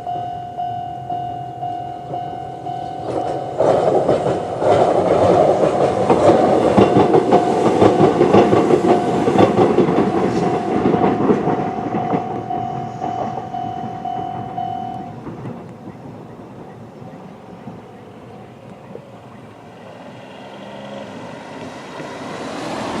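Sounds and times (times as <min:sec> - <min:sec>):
level crossing warning alarm: 0:00.0 - 0:15.3
train wheels clicking over rail joints: 0:00.0 - 0:19.0
train rumble: 0:00.0 - 0:23.0.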